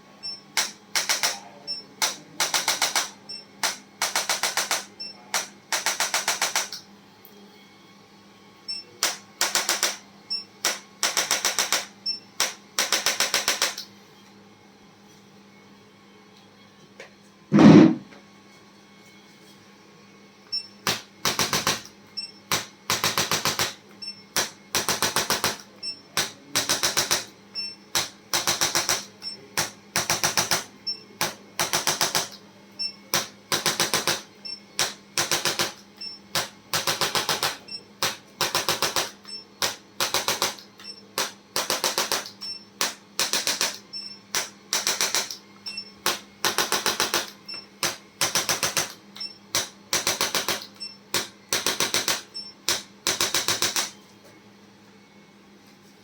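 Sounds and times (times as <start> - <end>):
rapid clicks of handheld instrument: 0.6 - 1.4, 2.0 - 6.8, 9.0 - 10.0, 10.6 - 13.9, 34.8 - 45.4.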